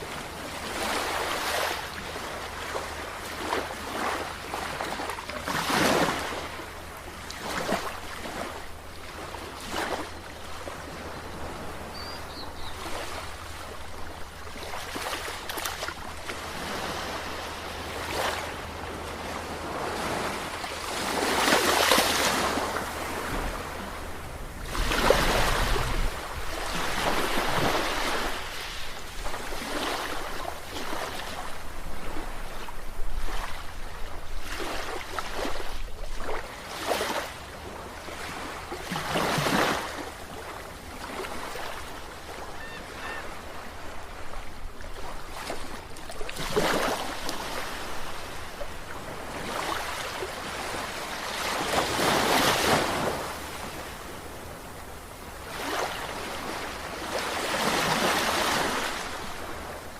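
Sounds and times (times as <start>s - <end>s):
sea waves washing in: 12.7s - 59.9s.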